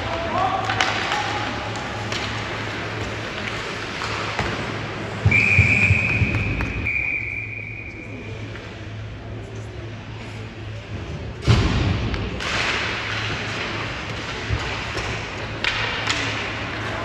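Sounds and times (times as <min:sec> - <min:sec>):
arena noise: 0:00.0 - 0:17.0
referee's whistle blast: 0:05.3 - 0:08.0.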